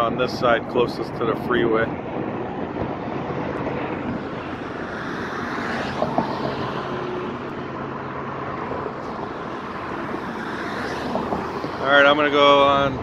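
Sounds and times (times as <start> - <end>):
road traffic rumble: 0.0 - 13.0
vehicle passing: 2.2 - 13.0.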